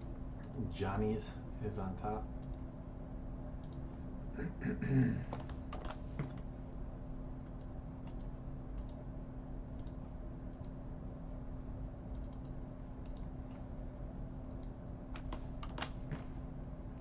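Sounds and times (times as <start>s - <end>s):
steady low hum: 0.0s - 17.0s
keyboard and mouse clicks: 3.6s - 3.8s, 5.3s - 6.4s, 7.4s - 9.0s, 9.8s - 10.8s, 12.1s - 13.3s, 14.5s - 16.2s.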